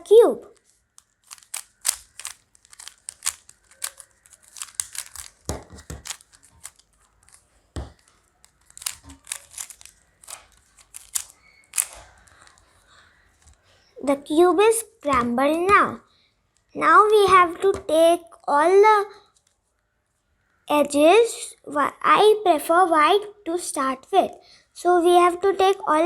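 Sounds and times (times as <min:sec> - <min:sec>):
puzzle cube plastic clicks: 0:00.1 - 0:15.8.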